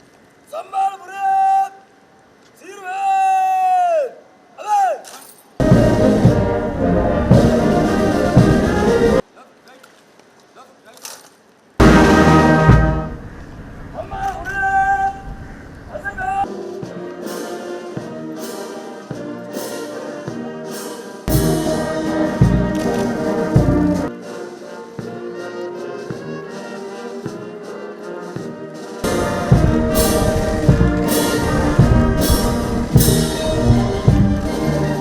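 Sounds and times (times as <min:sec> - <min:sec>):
drum beat: 0:05.6 - 0:06.6, 0:07.3 - 0:09.2, 0:11.8 - 0:13.1, 0:16.8 - 0:24.1, 0:28.4 - 0:34.5
horns and trumpets holding notes: 0:05.6 - 0:09.2, 0:11.8 - 0:13.5, 0:16.2 - 0:35.0.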